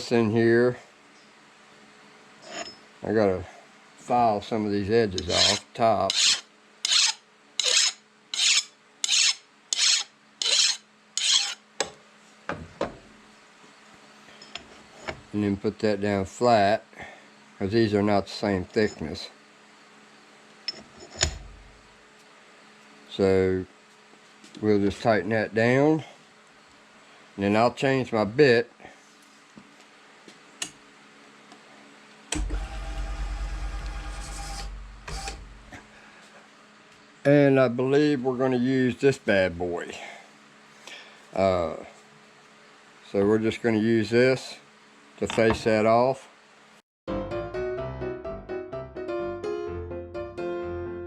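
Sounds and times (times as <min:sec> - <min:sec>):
hand file on metal: 0:05.2 - 0:11.6.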